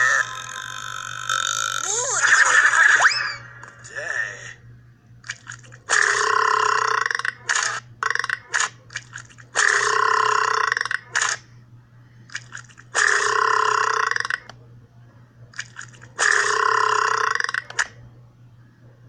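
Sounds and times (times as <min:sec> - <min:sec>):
long loud burps: 0:00.0 - 0:02.8, 0:05.9 - 0:07.4, 0:09.6 - 0:11.0, 0:13.0 - 0:14.5, 0:16.2 - 0:17.6.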